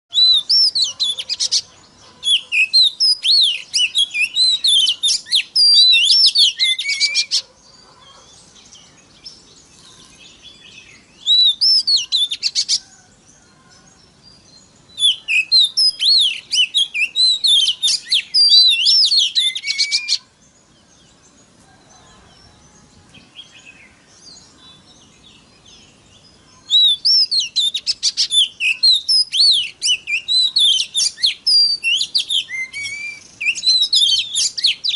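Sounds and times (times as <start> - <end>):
songbird whistling and clicking: 15.3 - 20.2, 26.8 - 34.9.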